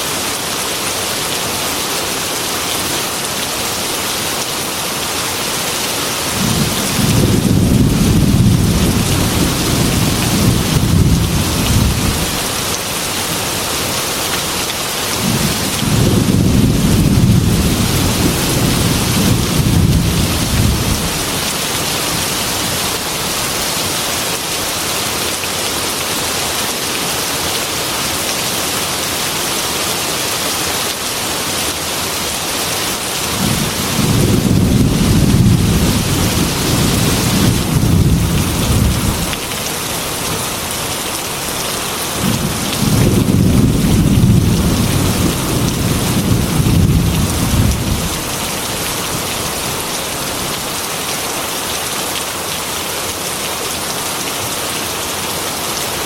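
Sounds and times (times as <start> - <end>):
heavy rain on a window: 0.1 - 56.0
low rolls of thunder: 15.2 - 21.2, 33.4 - 39.3, 42.2 - 48.2.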